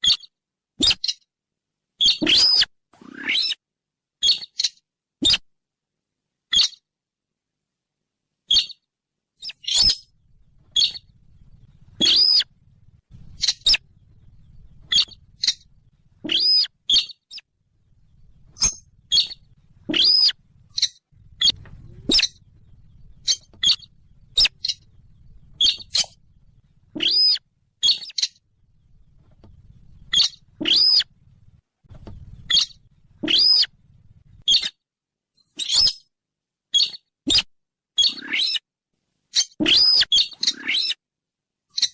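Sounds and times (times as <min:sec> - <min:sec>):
high bird chirps: 0:00.0 - 0:01.3, 0:02.0 - 0:03.6, 0:04.2 - 0:05.4, 0:06.5 - 0:06.8, 0:08.5 - 0:31.2, 0:32.0 - 0:34.8, 0:35.5 - 0:36.1, 0:36.8 - 0:38.6, 0:39.4 - 0:41.0
faint low hum: 0:09.8 - 0:34.5.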